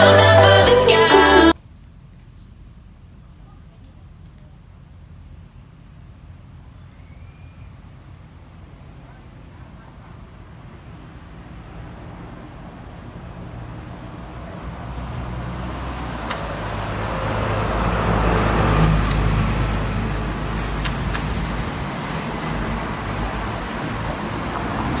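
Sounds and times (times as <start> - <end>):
vehicle passing by: 10.9 - 25.0.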